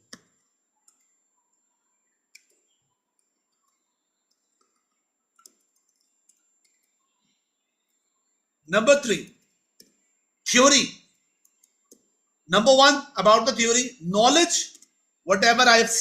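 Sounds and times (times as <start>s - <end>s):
faint clicks: 0.0s - 8.1s, 11.1s - 12.1s, 14.7s - 15.0s.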